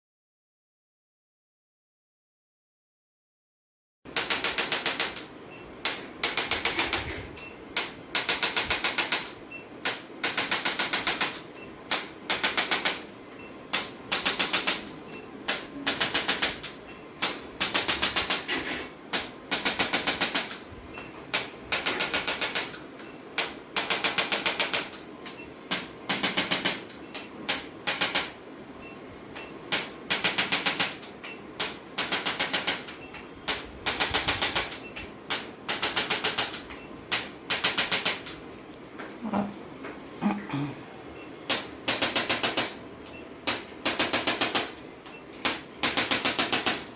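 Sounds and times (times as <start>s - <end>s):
rapid mechanical clicking: 4.1s - 13.1s, 13.7s - 14.9s, 15.5s - 18.5s, 19.1s - 20.6s, 21.3s - 22.8s, 23.4s - 28.4s, 29.3s - 38.4s, 41.5s - 46.9s.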